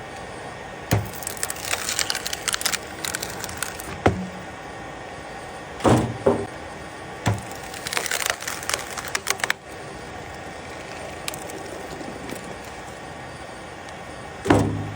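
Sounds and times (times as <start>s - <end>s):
crackling clicks: 0.9s - 4.0s, 7.3s - 13.0s
wood knocking: 3.9s - 4.5s, 5.8s - 6.5s.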